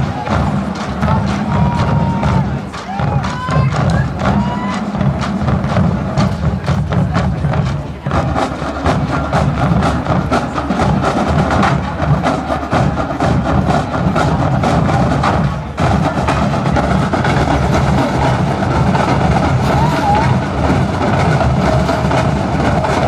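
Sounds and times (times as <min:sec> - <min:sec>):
drums striking a quick rhythm: 0:00.0 - 0:23.0
marching bands playing: 0:00.0 - 0:23.0.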